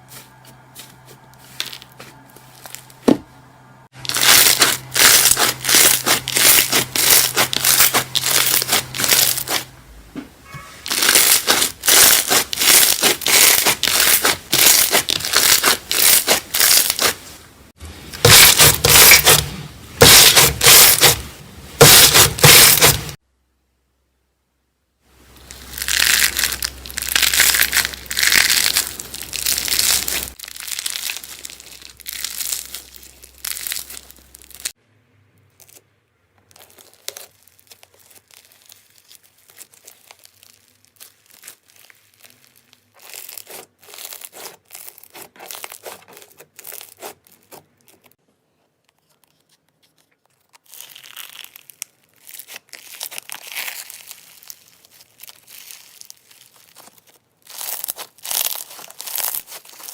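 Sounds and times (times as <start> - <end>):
slime squeezed by hand crackling: 4.0 - 9.7, 10.8 - 17.4, 25.3 - 34.7, 36.4 - 48.2, 50.5 - 59.9.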